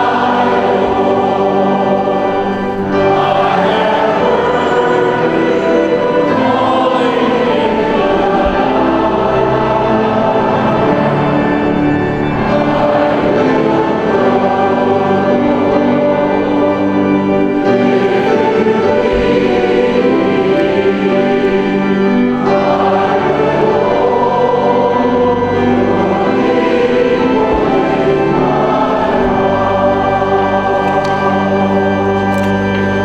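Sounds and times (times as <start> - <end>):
church choir singing: 0.0 - 33.0.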